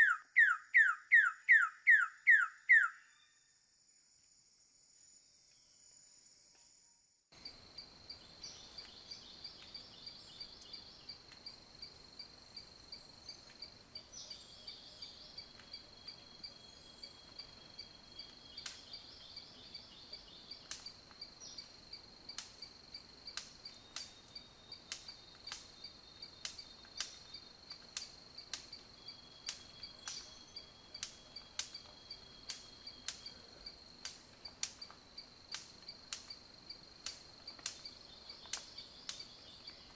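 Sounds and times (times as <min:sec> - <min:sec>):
sharp clicks: 0:37.0 - 0:37.9.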